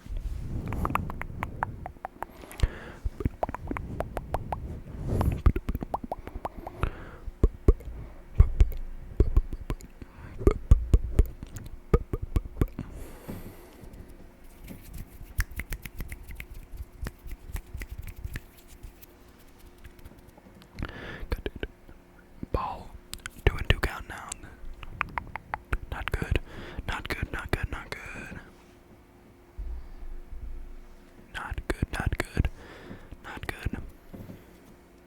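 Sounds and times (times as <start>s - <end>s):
tongue clicks and lip pops: 0.6s - 4.6s, 5.2s - 12.8s, 15.2s - 18.9s, 19.6s - 21.7s, 23.1s - 26.3s
soft low thump: 29.6s - 30.9s.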